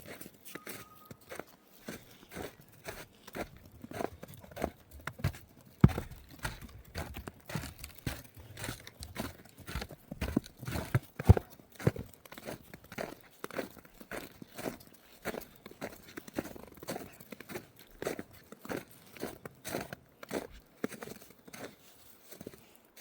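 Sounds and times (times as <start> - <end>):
footsteps crunching in snow: 0.0 - 23.0.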